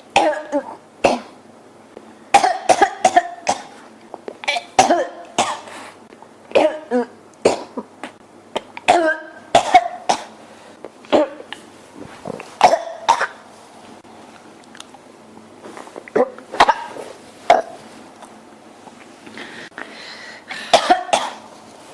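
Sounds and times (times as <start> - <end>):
person coughing: 0.2 - 1.4, 2.3 - 3.8, 4.4 - 5.7, 6.5 - 8.2, 8.9 - 10.4, 11.1 - 11.5, 12.6 - 13.4, 16.1 - 17.8, 20.5 - 21.5
person clearing throat: 4.4 - 5.7, 6.6 - 10.3, 11.1 - 11.5, 12.3 - 13.4, 16.1 - 17.8, 20.5 - 21.5.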